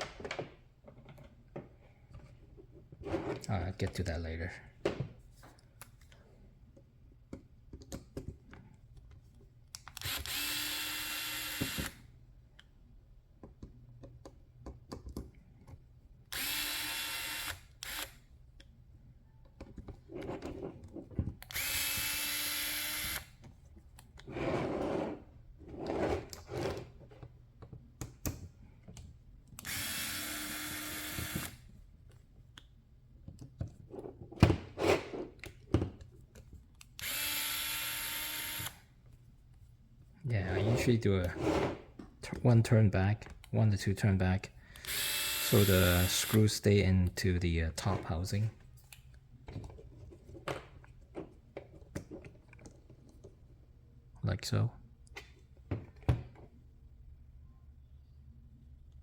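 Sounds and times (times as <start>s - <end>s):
electric screwdriver whirring: 9.9s - 12.0s, 16.3s - 18.2s, 21.5s - 23.3s, 29.6s - 31.6s, 37.0s - 38.8s, 44.8s - 46.4s.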